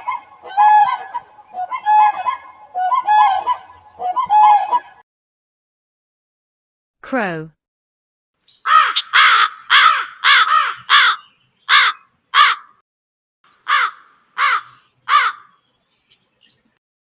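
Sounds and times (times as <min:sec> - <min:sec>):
crow cawing: 0:08.7 - 0:12.8, 0:13.6 - 0:15.6.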